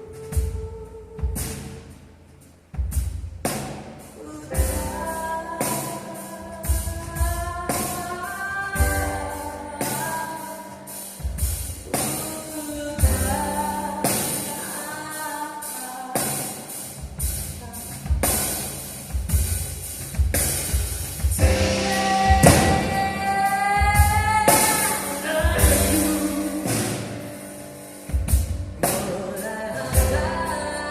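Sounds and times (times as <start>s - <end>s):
woman singing: 0.0s - 1.8s, 4.2s - 16.9s, 21.3s - 28.0s, 28.7s - 30.9s
drum kit: 0.0s - 30.9s
piano and keyboards: 0.0s - 30.9s.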